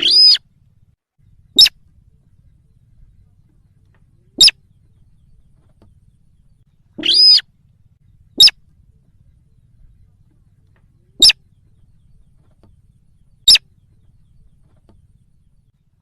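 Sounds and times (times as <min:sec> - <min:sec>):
sharp high bird calls: 0:00.0 - 0:00.5, 0:01.3 - 0:01.9, 0:04.2 - 0:05.7, 0:06.3 - 0:07.5, 0:08.2 - 0:08.7, 0:11.0 - 0:12.2, 0:13.0 - 0:15.6.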